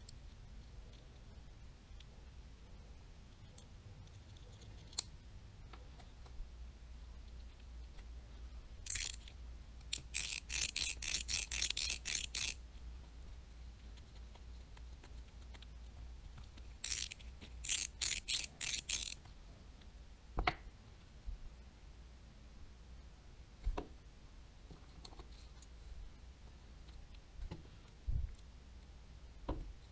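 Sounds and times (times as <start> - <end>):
fishing reel clicking: 8.9 - 9.2, 9.9 - 12.6, 16.8 - 19.2.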